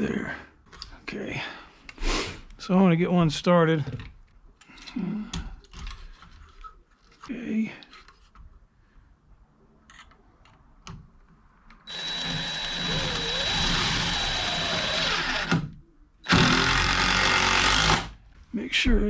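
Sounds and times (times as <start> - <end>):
power drill driving screw into wood: 11.9 - 18.2.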